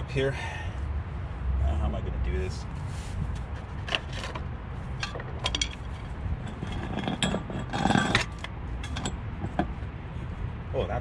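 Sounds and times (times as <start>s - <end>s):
metal tools clinking: 5.0s - 9.7s.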